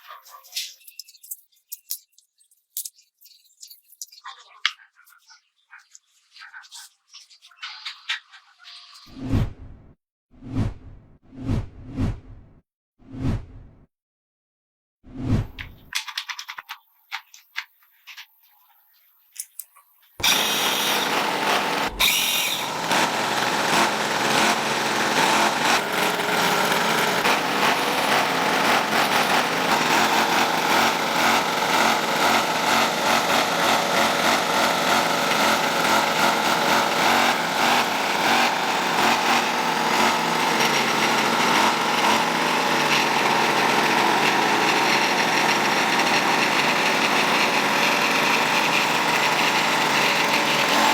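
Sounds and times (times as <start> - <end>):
small motorized tool running: 20.2 - 50.9.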